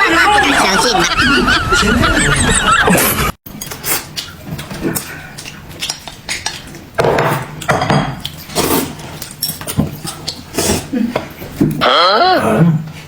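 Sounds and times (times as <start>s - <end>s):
utensils clinking on plates: 3.5s - 11.8s.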